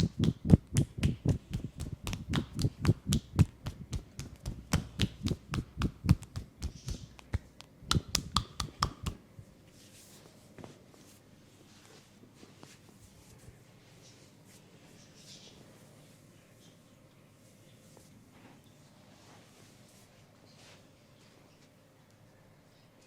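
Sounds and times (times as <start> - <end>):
hands striking oiled skin: 0.0 - 9.2.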